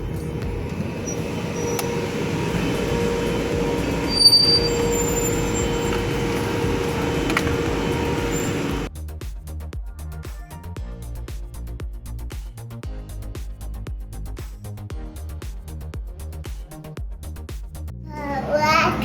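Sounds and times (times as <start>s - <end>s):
vehicle running with whine: 0.0s - 8.9s.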